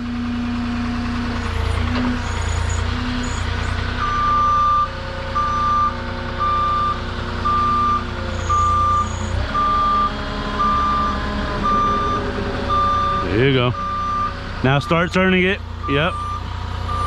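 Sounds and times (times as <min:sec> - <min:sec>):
forklift engine running: 0:00.0 - 0:17.0
forklift backup alarm beeping: 0:01.1 - 0:17.0.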